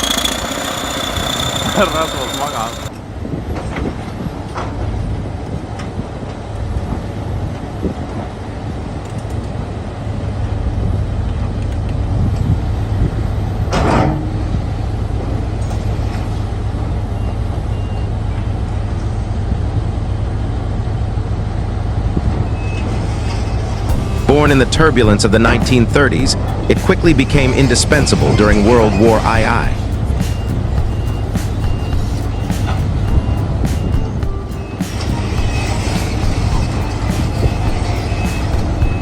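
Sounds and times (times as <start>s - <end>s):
bulldozer diesel engine rumbling: 0.0s - 3.2s, 12.8s - 39.0s.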